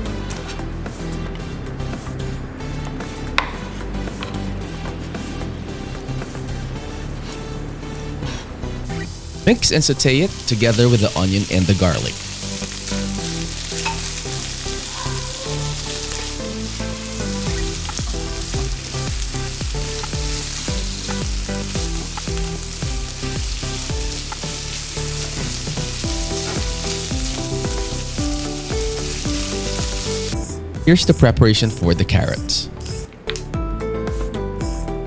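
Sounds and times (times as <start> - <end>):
background music: 0.0 - 35.0
food sizzling in a pan: 8.9 - 30.6.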